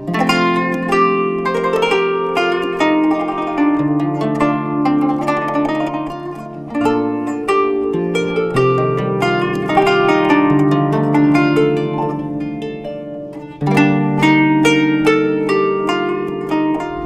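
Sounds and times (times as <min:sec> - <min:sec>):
plucked zither playing: 0:00.0 - 0:17.0.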